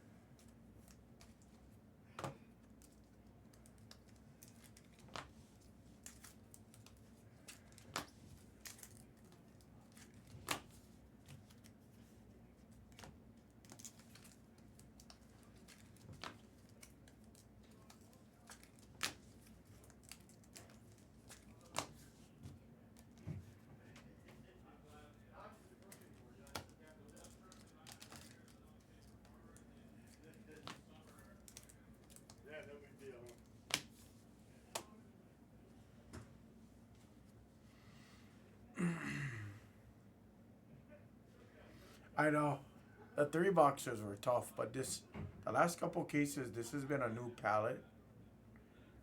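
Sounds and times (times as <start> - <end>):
faint steady hum: 0.0 - 49.0
cards clicking and tapping: 0.4 - 5.4, 6.0 - 11.7, 12.9 - 22.1, 25.9 - 32.4, 33.2 - 34.0.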